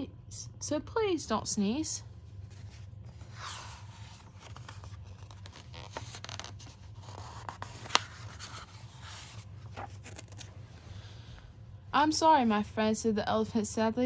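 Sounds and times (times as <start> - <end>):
book pages rustling: 2.3 - 11.0.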